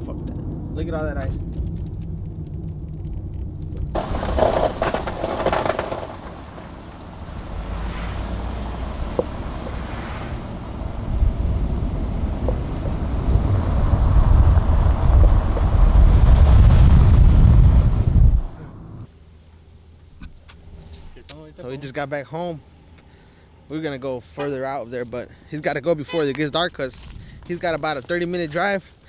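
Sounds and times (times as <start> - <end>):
truck engine and road rumble: 0.0 - 29.0
rush of noise: 7.2 - 19.0.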